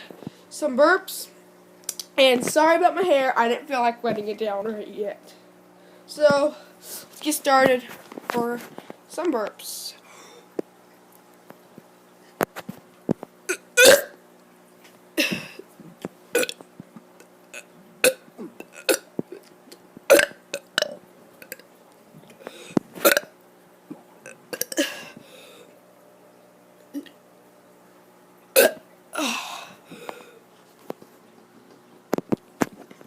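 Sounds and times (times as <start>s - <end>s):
child burping: 13.5s - 14.2s, 15.2s - 15.6s, 16.4s - 16.6s, 17.6s - 19.1s, 20.1s - 21.6s, 23.0s - 23.4s, 24.5s - 25.2s, 26.9s - 27.2s, 28.6s - 29.7s.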